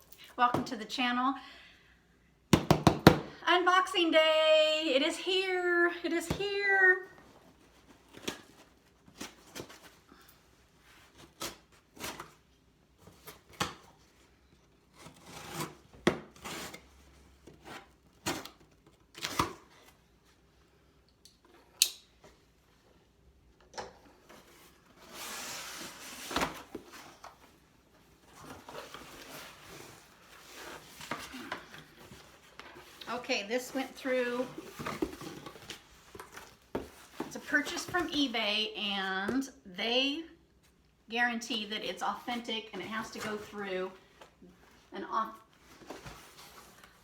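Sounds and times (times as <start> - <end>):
packaging rustling and scraping: 24.2 - 38.4, 42.2 - 47.0.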